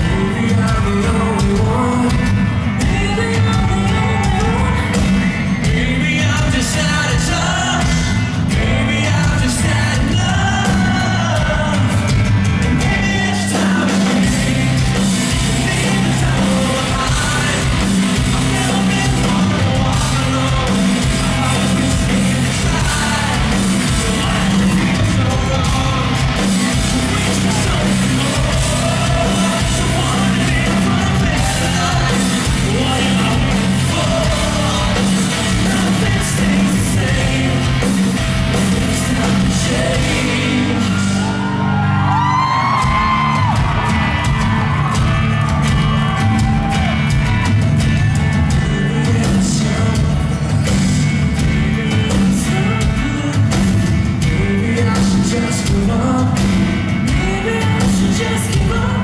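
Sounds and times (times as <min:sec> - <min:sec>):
lead singer: 0:00.0 - 0:59.0
rock band playing live: 0:00.0 - 0:59.0
audience shouting: 0:39.9 - 0:48.6.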